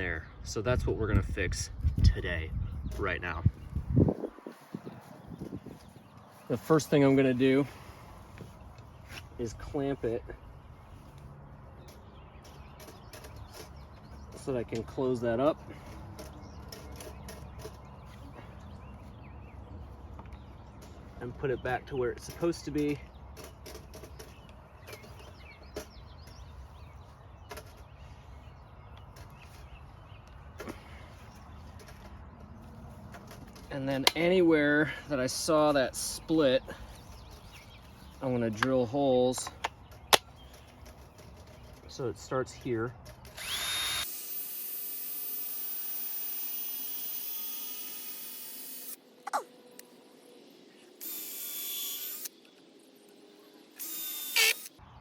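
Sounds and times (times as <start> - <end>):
power drill boring into wood: 43.3 - 49.0, 51.0 - 52.3, 53.8 - 54.7.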